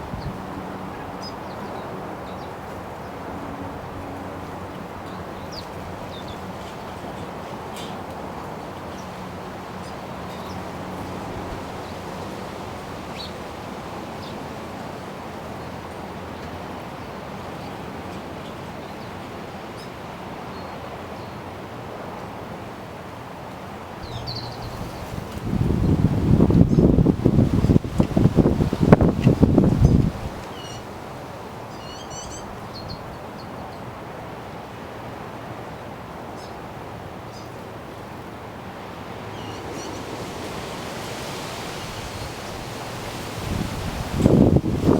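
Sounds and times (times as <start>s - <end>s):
wind on microphone: 0.0s - 1.0s, 24.0s - 30.6s, 39.4s - 44.9s
small birds chirping: 24.0s - 30.9s, 31.7s - 33.7s, 39.2s - 44.9s
bird chirps: 31.8s - 33.0s.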